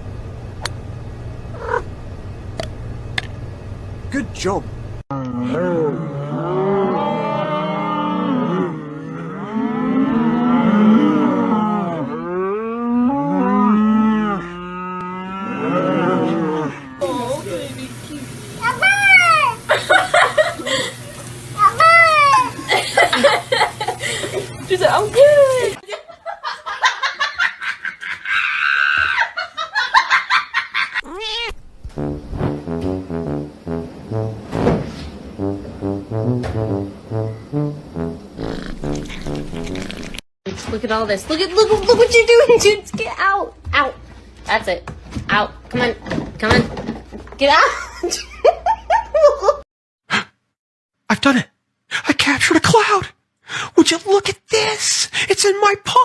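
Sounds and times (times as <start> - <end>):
animal wavering calls: 1.6 - 1.9, 5.2 - 17.0
person laughing hard: 19.7 - 21.1, 22.6 - 24.5, 25.7 - 31.1.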